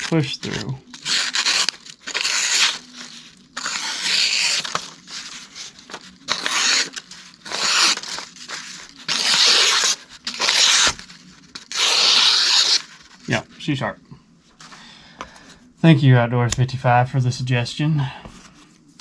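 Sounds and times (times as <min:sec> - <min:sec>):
knife slicing through paper: 0:00.0 - 0:13.4.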